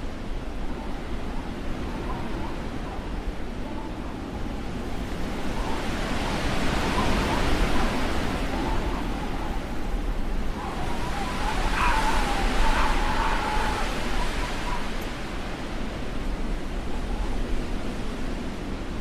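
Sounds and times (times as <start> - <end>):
blizzard wind gusting: 0.2 - 19.0
thin wavering wind whistle: 4.2 - 17.9.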